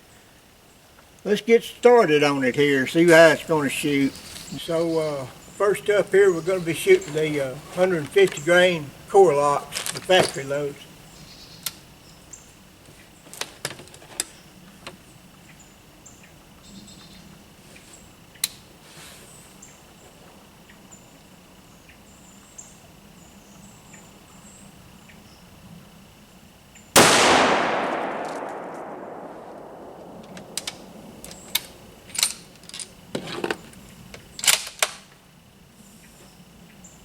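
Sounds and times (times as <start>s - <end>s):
rifle shot: 27.0s - 31.2s
faint clicks: 30.0s - 32.8s.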